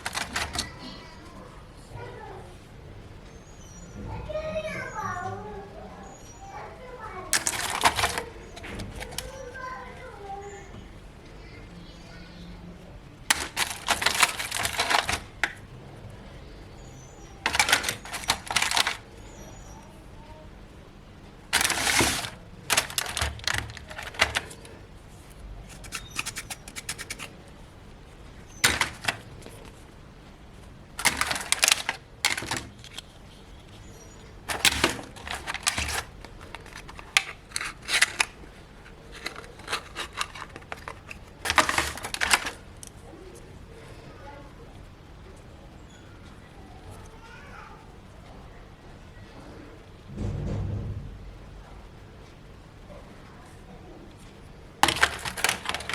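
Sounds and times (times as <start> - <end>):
plastic toy pieces clicking: 0.0 - 1.1, 7.3 - 10.0, 13.3 - 15.6, 17.2 - 19.5, 21.5 - 24.8, 25.7 - 27.3, 28.4 - 29.8, 30.9 - 33.8, 34.4 - 43.0, 54.8 - 55.9.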